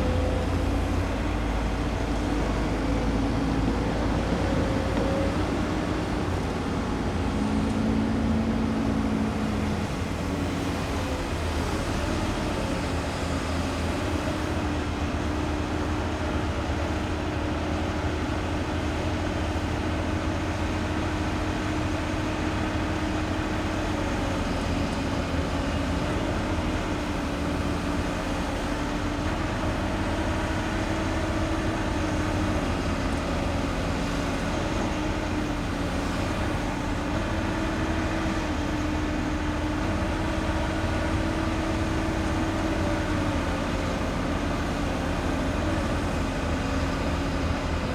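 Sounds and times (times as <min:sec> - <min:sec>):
excavator engine drone: 0:00.0 - 0:47.9.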